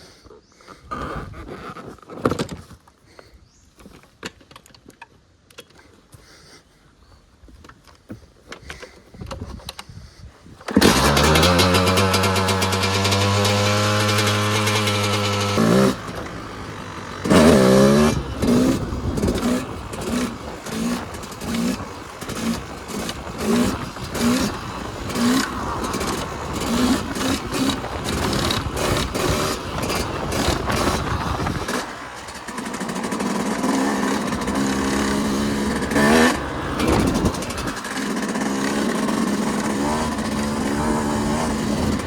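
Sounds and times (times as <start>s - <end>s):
dirt bike engine running: 10.7s - 42.0s.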